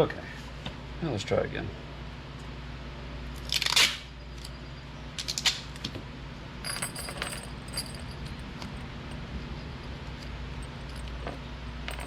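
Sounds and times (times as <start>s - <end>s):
light metallic rattle: 6.6s - 12.0s.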